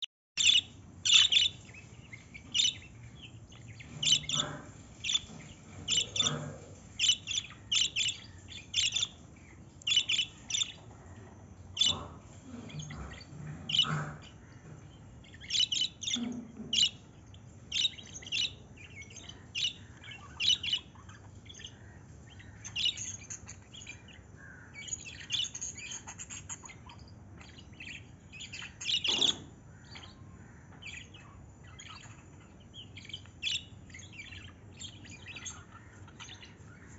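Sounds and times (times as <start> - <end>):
lovebirds chirping: 0.4 - 36.9.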